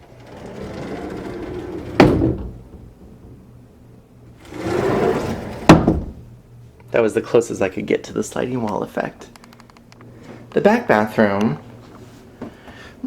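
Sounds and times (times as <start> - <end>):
sliding door scraping: 0.0 - 3.4, 4.4 - 6.0
door banging shut: 0.5 - 3.0, 5.6 - 6.2.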